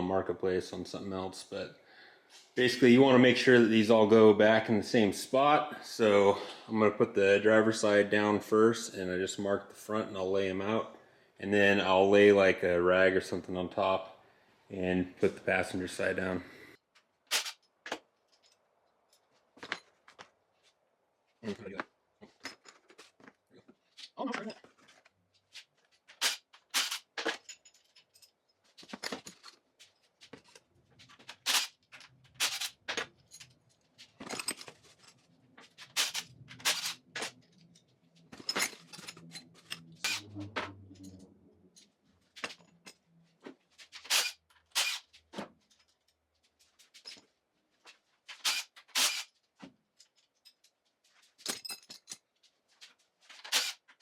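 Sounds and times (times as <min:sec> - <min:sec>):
metal parts clinking: 0:17.3 - 0:17.7, 0:26.1 - 0:40.3, 0:44.0 - 0:46.0, 0:48.3 - 0:49.4, 0:50.0 - 0:52.4, 0:53.3 - 0:54.0.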